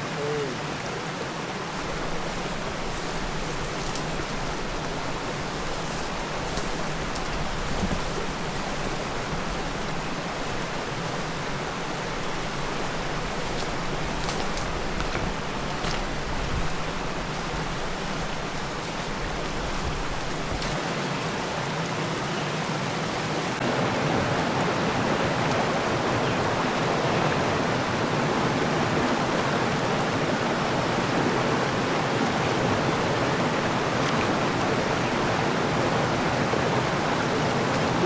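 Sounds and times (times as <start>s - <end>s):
river rushing over rocks: 0.0s - 38.0s.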